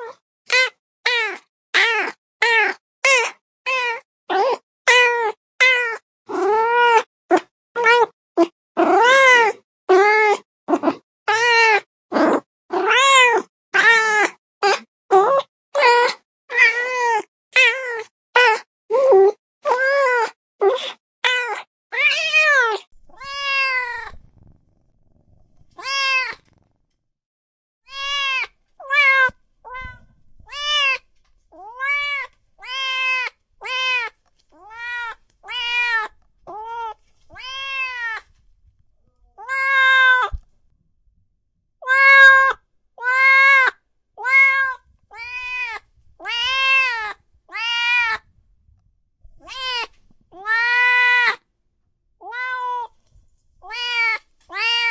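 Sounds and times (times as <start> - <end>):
cat meowing: 3.7 - 7.1, 21.2 - 24.5, 25.2 - 26.6, 27.9 - 38.3, 39.4 - 40.4, 41.8 - 48.3, 49.4 - 51.4, 52.2 - 53.0, 53.6 - 54.9.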